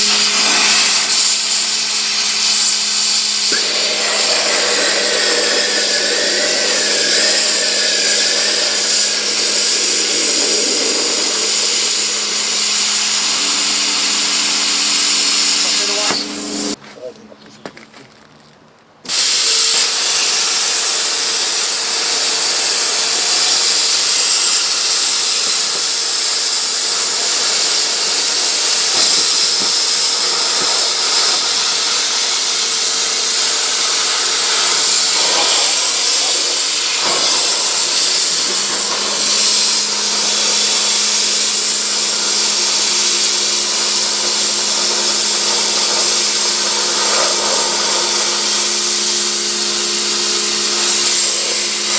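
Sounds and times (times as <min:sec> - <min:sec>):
lower hum: 0:00.0 - 0:16.8
plasma cutter arc hissing: 0:00.0 - 0:16.8, 0:19.1 - 0:51.9
faint hum: 0:03.5 - 0:16.8.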